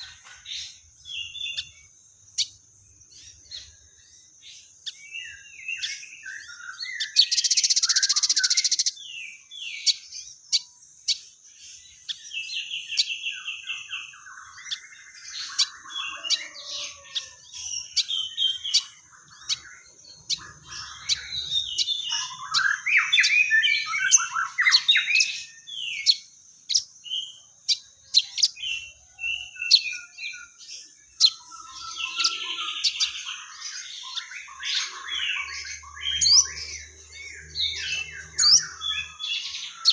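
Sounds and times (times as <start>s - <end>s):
bird singing chirps and trills: 0.0s - 39.9s.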